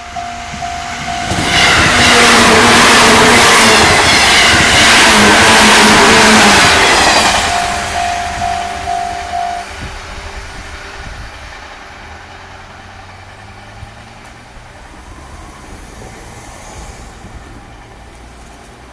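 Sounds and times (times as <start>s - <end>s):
electric train rumble: 0.0s - 18.9s.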